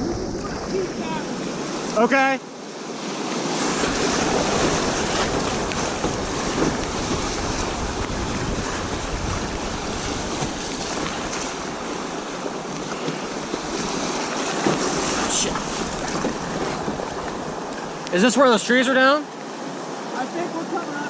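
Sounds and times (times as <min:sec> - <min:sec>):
wind buffeting microphone: 0:00.0 - 0:02.0, 0:03.5 - 0:18.2
river water rushing: 0:00.0 - 0:21.0.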